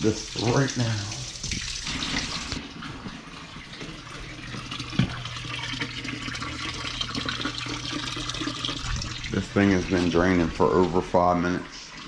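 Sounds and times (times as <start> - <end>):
water pouring into pit: 3.9 - 11.9.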